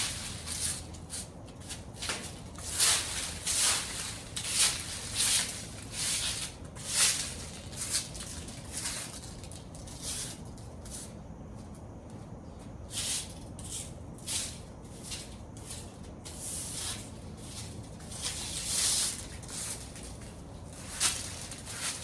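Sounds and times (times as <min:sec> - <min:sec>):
rustling and scratching: 0:00.0 - 0:11.0, 0:16.8 - 0:22.0.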